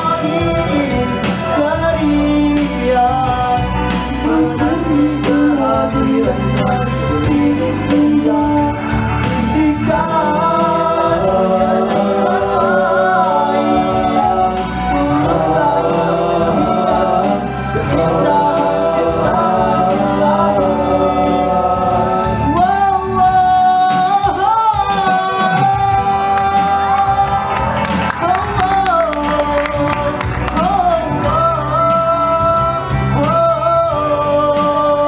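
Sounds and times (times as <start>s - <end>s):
vocal group singing in harmony: 0.0s - 35.0s.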